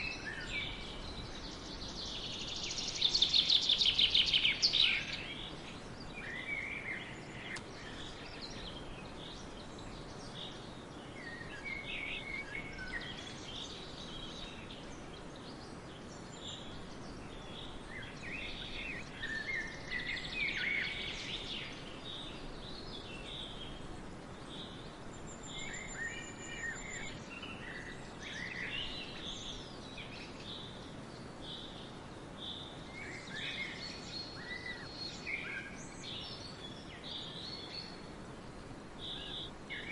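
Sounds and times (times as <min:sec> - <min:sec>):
faint background hiss: 0:00.0 - 0:39.9
songbirds singing: 0:00.0 - 0:39.9.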